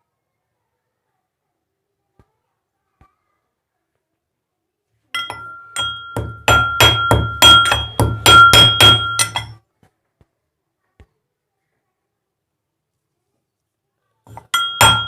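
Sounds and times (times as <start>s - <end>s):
pestle clinking in mortar: 5.2s - 9.6s, 14.3s - 15.0s.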